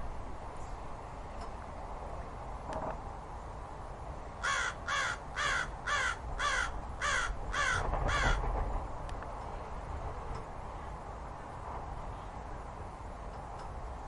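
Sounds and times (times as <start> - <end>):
crow cawing: 4.4 - 8.4.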